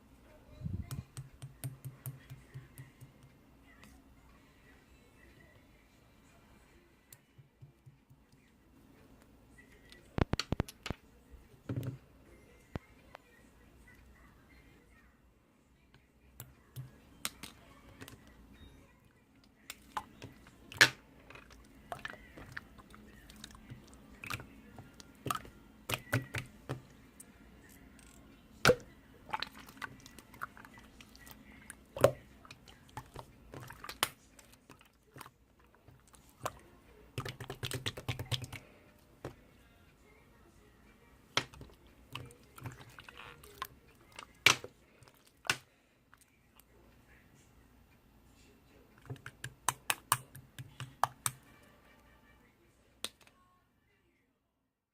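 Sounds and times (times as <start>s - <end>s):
slime squelching and popping: 28.6s - 38.6s, 49.0s - 51.4s.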